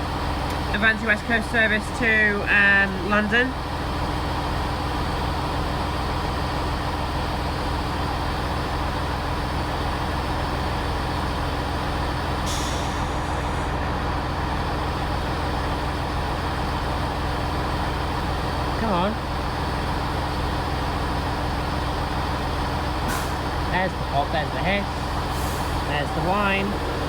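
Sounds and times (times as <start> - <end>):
electric train humming: 19.6 - 27.0.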